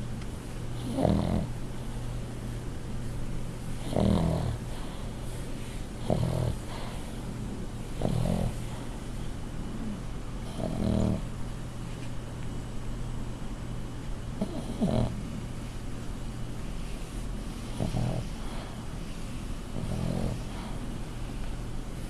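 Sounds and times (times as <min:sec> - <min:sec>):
steady low hum: 0:00.0 - 0:22.0
dog snoring loudly: 0:00.8 - 0:01.5, 0:03.8 - 0:05.1, 0:06.0 - 0:07.1, 0:08.0 - 0:08.8, 0:10.4 - 0:11.3, 0:14.4 - 0:15.3, 0:17.7 - 0:18.8, 0:19.8 - 0:20.8.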